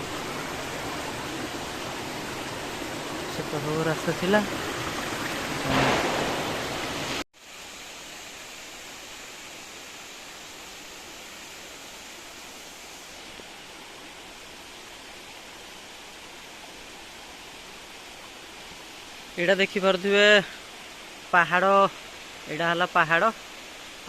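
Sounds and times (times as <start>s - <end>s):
waterfall rushing: 0.0s - 13.4s, 18.7s - 24.0s.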